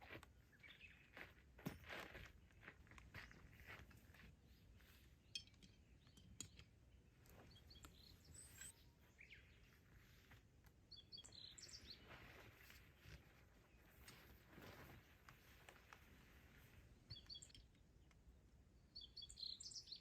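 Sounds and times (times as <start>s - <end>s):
faint bird chirps: 0.4s - 1.4s, 5.2s - 16.0s, 17.0s - 18.2s, 18.8s - 20.0s.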